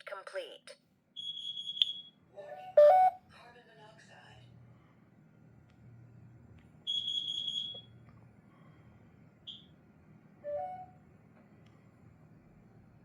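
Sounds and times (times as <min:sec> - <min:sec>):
smoke alarm beep: 0:01.2 - 0:02.2, 0:02.8 - 0:03.2, 0:06.9 - 0:07.9, 0:09.5 - 0:09.7, 0:10.5 - 0:10.9.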